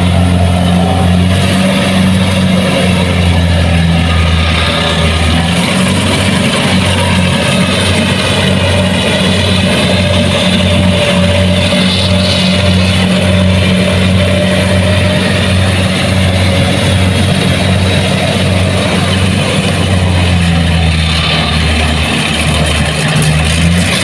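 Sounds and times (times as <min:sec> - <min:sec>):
combine harvester engine running: 0:00.0 - 0:24.0.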